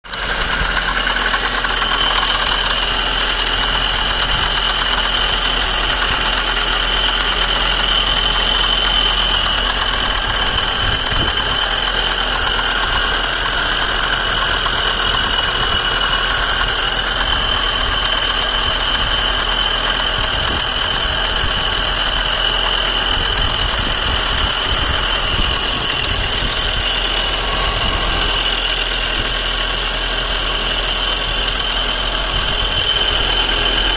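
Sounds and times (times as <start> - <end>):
engine idling with knock: 0.0 - 33.9.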